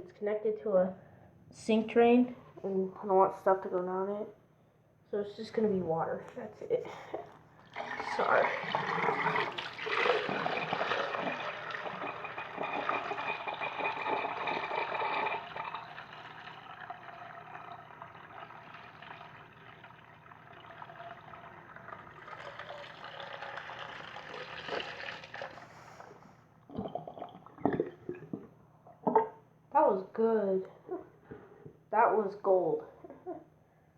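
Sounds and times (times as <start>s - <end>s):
water trickling and gurgling: 7.6s - 25.7s
toilet flushing: 7.6s - 26.2s.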